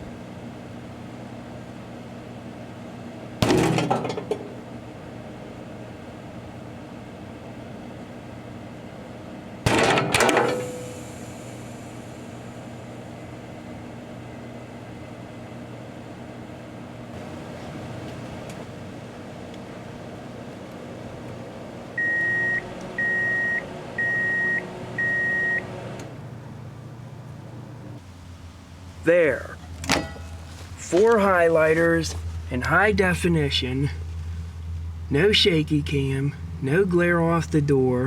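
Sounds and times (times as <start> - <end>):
microwave oven humming: 0.0 - 38.0
microwave beeps: 22.0 - 25.8.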